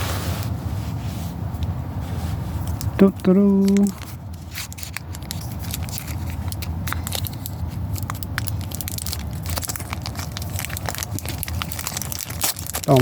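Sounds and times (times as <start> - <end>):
steady low rumble: 0.0 - 13.0
foil wrapper crinkling: 2.7 - 13.0.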